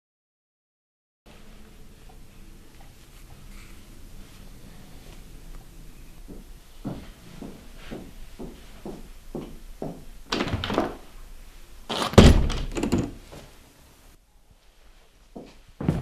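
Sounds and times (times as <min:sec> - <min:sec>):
door banging shut: 0:10.3 - 0:11.1, 0:11.9 - 0:13.3.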